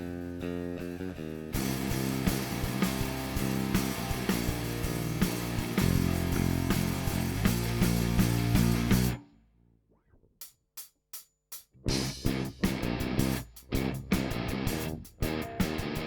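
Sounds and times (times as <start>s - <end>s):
electric bass notes: 0.0s - 9.3s, 11.8s - 16.0s.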